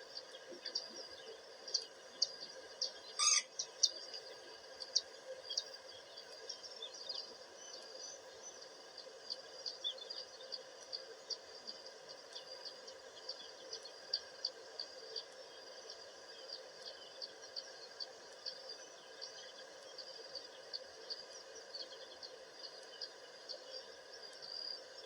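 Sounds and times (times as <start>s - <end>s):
loud full bird call: 2.8s - 4.0s.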